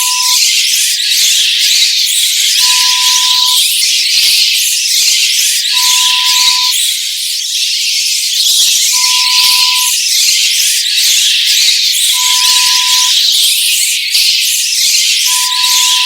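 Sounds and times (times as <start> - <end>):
steady one-pitch beep: 0.0 - 0.4, 2.6 - 3.6, 5.7 - 6.8, 8.9 - 10.0, 12.1 - 13.2, 15.3 - 16.0
bats squeaking and chittering: 0.0 - 16.0.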